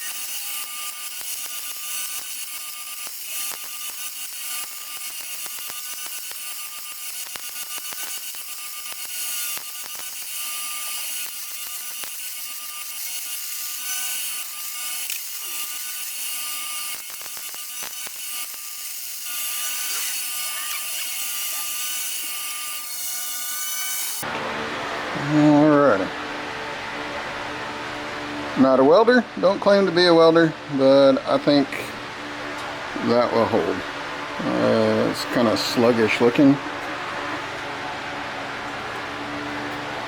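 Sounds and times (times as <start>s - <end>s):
welding arc crackling: 0.0s - 24.2s.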